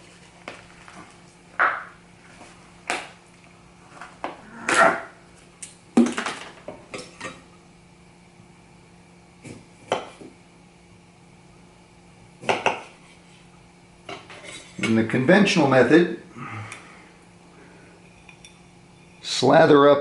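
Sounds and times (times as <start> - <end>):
kitchen items set down on counter: 6.0 - 6.8.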